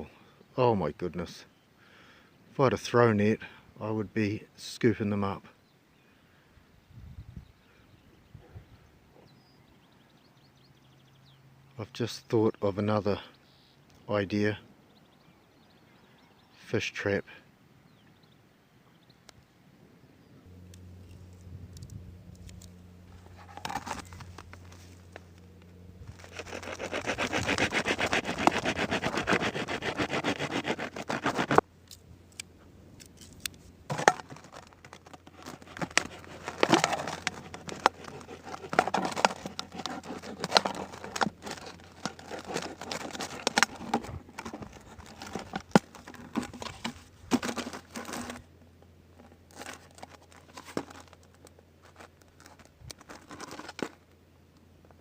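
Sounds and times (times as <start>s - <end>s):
plastic crinkling: 26.0s - 31.6s, 33.2s - 48.4s.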